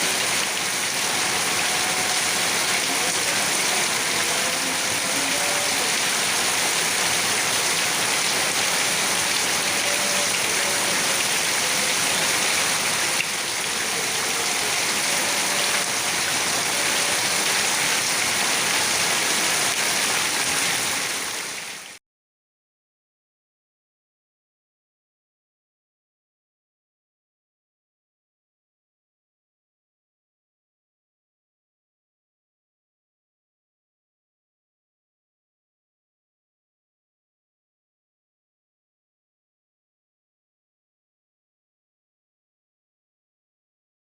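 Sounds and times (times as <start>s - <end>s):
heavy rain falling: 0.0s - 22.0s.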